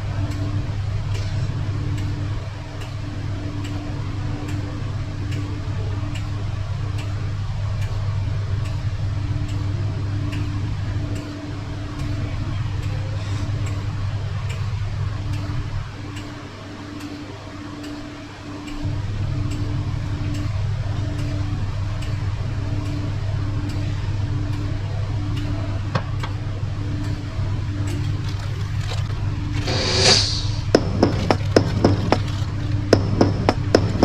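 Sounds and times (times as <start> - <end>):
low mechanical hum: 0.0 - 34.0
sharp regular ticking: 29.4 - 34.0.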